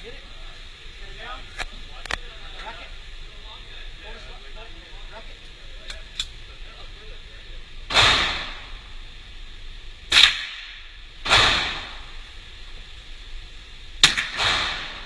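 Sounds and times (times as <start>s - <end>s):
rifle shots: 7.9s - 8.7s, 10.1s - 12.1s, 14.0s - 15.0s.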